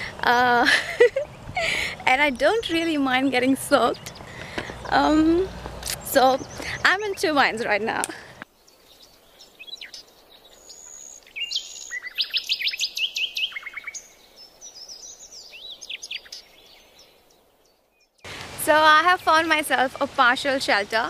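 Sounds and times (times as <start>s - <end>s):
rain hiss: 0.0s - 2.2s, 18.3s - 21.0s
birds chirping and trilling: 0.0s - 21.0s.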